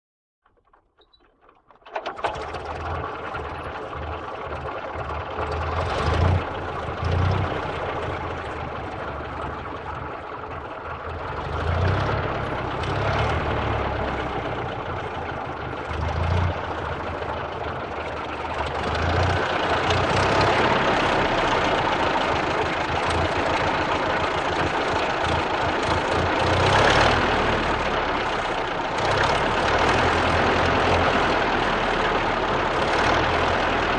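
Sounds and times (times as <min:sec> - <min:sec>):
car engine starting and idling: 0:00.4 - 0:33.9.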